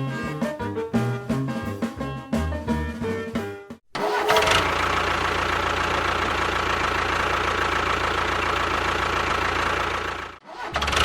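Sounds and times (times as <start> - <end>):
engine starting and running: 3.9 - 11.0.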